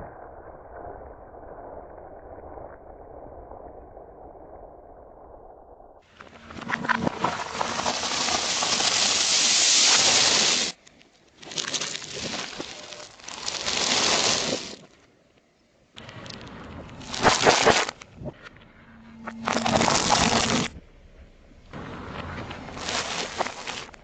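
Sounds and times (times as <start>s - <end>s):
tyre crushing crunchy objects: 11.4s - 14.9s, 17.0s - 18.0s, 22.4s - 24.0s.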